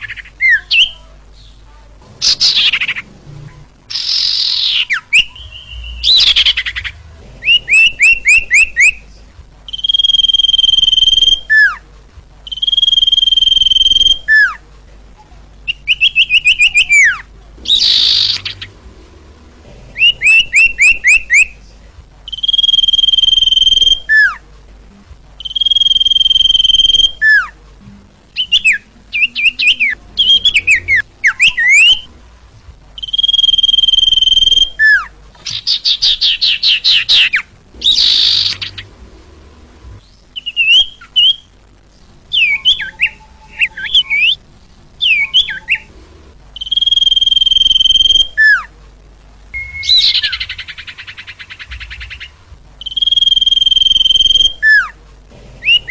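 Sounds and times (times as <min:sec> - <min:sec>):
bird chirping trills: 0:00.0 - 0:01.6, 0:02.2 - 0:11.8, 0:12.4 - 0:14.6, 0:15.6 - 0:21.7, 0:22.3 - 0:24.4, 0:25.4 - 0:27.6, 0:28.4 - 0:32.2, 0:33.0 - 0:39.0, 0:40.0 - 0:44.4, 0:45.0 - 0:48.7, 0:49.5 - 0:55.0, 0:55.6 - 0:55.9
high whistled bird notes: 0:02.2 - 0:03.1, 0:03.9 - 0:09.1, 0:09.7 - 0:11.8, 0:12.4 - 0:14.6, 0:15.7 - 0:18.8, 0:20.0 - 0:21.6, 0:22.3 - 0:24.4, 0:25.4 - 0:27.6, 0:28.4 - 0:32.1, 0:33.0 - 0:38.9, 0:40.1 - 0:41.6, 0:42.3 - 0:44.4, 0:45.0 - 0:45.9, 0:46.6 - 0:48.7, 0:49.5 - 0:55.0, 0:55.6 - 0:55.9.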